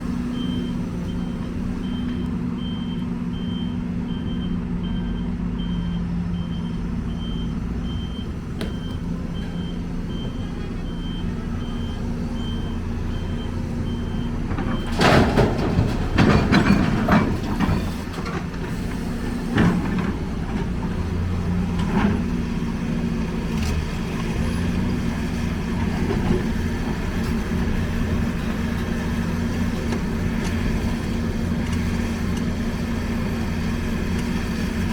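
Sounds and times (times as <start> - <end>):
heavy diesel engines running: 0.0 - 34.9
reversing alarm beeping: 0.2 - 15.1
loud crashing and clattering: 14.7 - 18.1.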